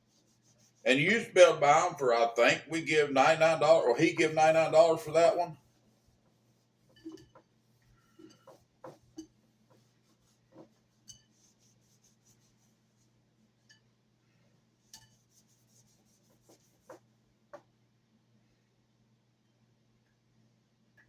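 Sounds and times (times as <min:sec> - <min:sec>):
soft rubbing: 0:00.0 - 0:01.5, 0:03.7 - 0:13.2, 0:14.8 - 0:17.1.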